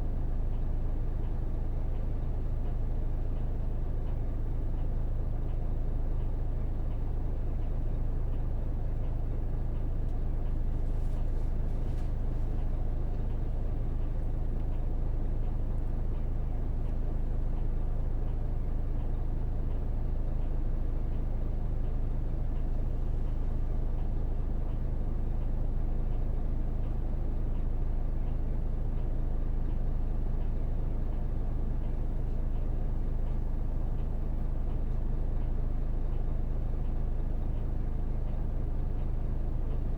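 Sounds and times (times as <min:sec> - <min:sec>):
bus engine and road rumble: 0:00.0 - 0:39.9.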